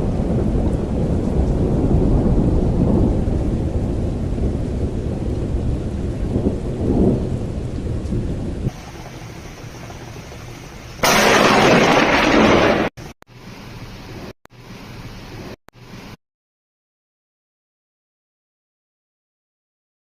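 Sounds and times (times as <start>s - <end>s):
thunder rumbling: 0.0s - 13.2s
heavy rain: 0.0s - 16.2s.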